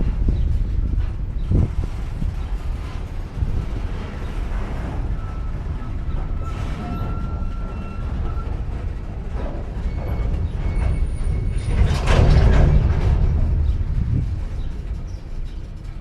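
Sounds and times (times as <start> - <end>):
train couplers clanking and banging: 0.0 - 16.0
train rolling with low rumble: 0.0 - 16.0
metallic wheel squeals: 3.8 - 16.0.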